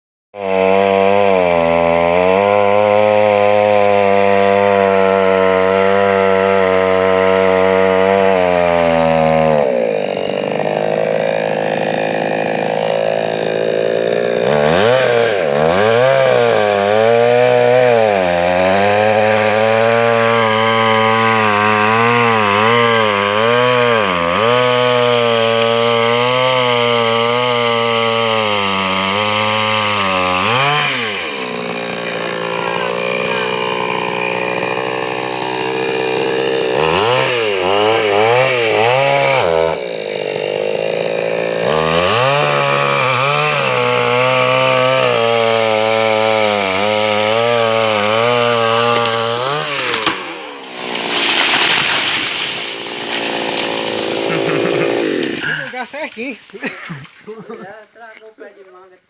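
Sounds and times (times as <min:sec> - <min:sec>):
chainsaw cutting wood: 0:00.4 - 0:58.5.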